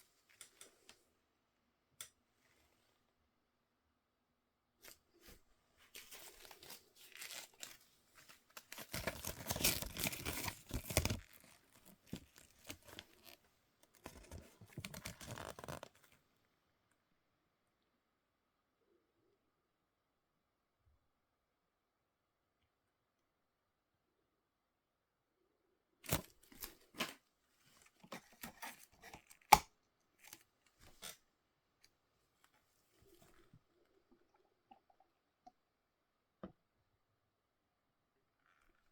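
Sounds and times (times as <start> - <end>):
packaging tearing and crinkling: 6.0 - 7.8, 8.5 - 16.1, 26.1 - 27.2.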